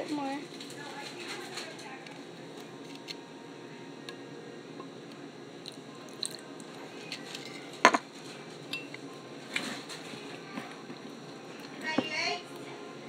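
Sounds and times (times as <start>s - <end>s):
slime squishing: 5.6s - 6.8s.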